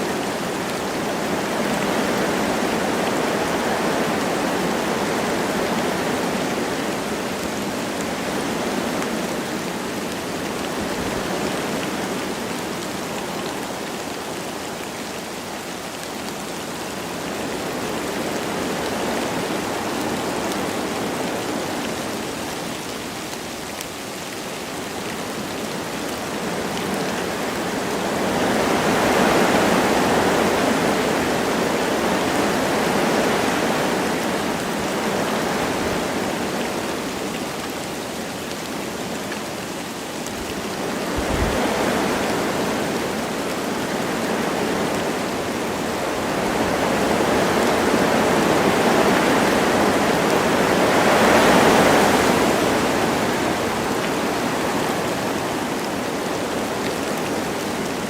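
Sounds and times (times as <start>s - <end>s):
light rain falling: 0.0s - 58.0s
wind through trees: 0.0s - 58.0s.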